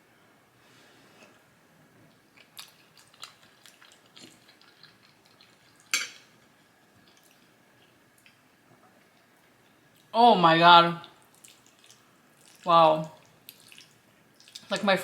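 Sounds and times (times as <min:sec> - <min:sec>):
person chewing food: 0:02.1 - 0:10.1, 0:11.2 - 0:14.7.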